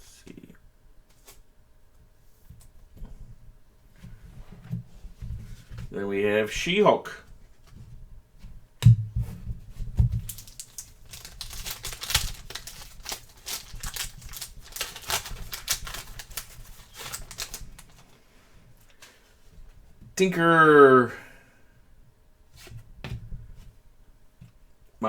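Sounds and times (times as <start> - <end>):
cards sliding and rustling: 10.2 - 18.2.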